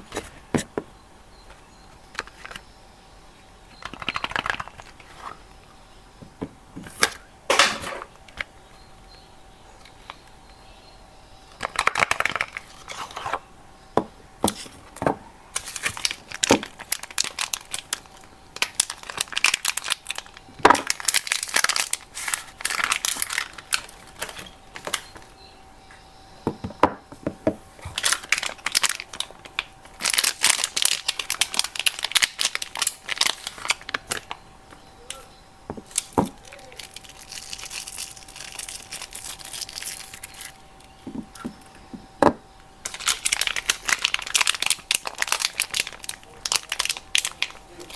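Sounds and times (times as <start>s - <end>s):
packaging crinkling and tearing: 3.8s - 5.4s, 11.5s - 13.4s, 15.6s - 25.3s, 27.8s - 34.4s, 35.8s - 41.5s, 42.9s - 47.9s.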